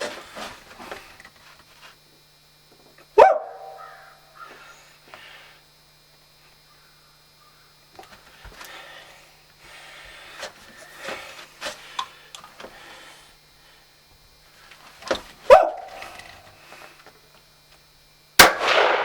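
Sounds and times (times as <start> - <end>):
coyote barks and yips: 3.2 - 4.5, 15.5 - 16.0.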